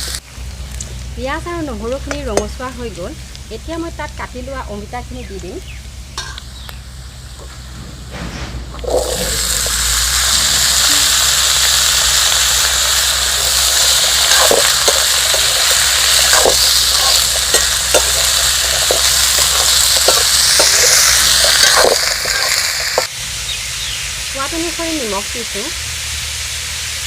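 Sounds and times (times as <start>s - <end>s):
food sizzling in hot oil: 0.0s - 27.0s
spatula scraping pan: 13.4s - 23.1s.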